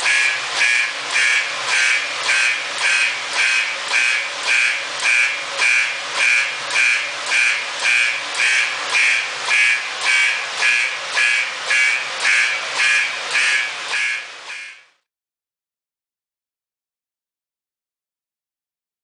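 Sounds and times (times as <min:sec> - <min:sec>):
fire alarm horns pulsing: 0:00.0 - 0:15.0.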